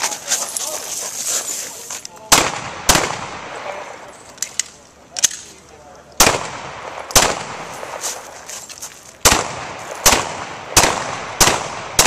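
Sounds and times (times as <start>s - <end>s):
pistol shots: 2.3s - 3.8s, 6.2s - 8.2s, 9.2s - 12.0s.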